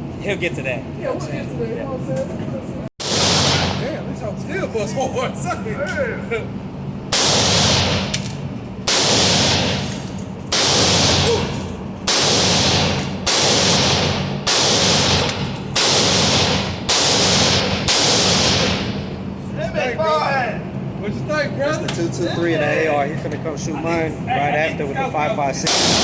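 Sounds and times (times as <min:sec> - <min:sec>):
rifle shots echoing: 0:03.0 - 0:04.0, 0:07.1 - 0:08.2, 0:08.9 - 0:09.9, 0:10.5 - 0:19.1, 0:25.7 - 0:26.0.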